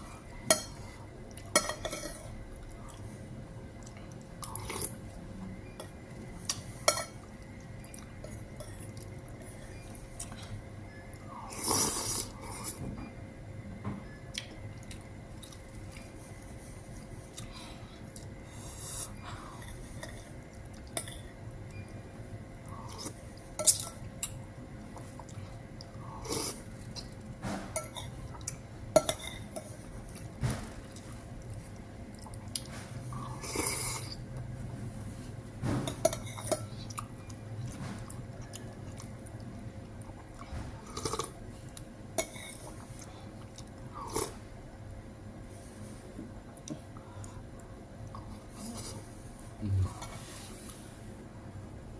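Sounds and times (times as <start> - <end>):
cutlery clinking and scraping on plate: 1.6 - 2.3.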